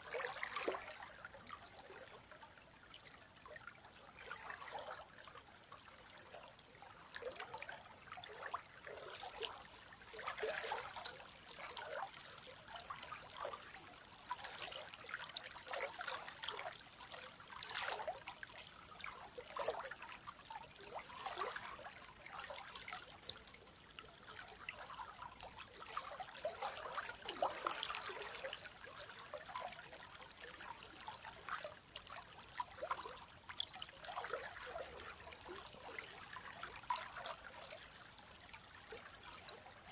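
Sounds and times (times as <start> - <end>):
river water flowing over stones: 8.9 - 39.9.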